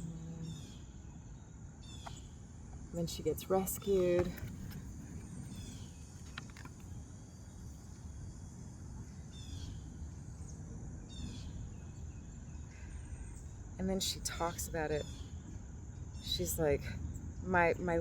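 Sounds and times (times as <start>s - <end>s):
high insect trill: 0.0s - 18.0s.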